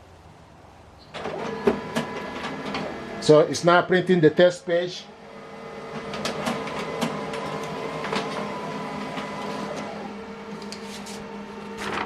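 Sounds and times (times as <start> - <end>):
printer clicks: 1.2 - 3.2, 5.9 - 10.0
laser printer humming: 1.2 - 12.0.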